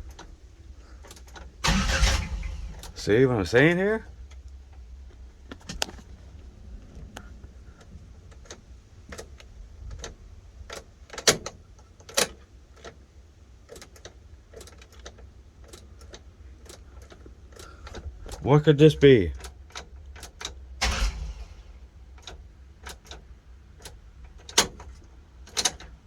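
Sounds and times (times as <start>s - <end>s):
car starter clicking: 1.0s - 3.1s, 19.4s - 23.2s
low steady hum: 20.8s - 22.4s.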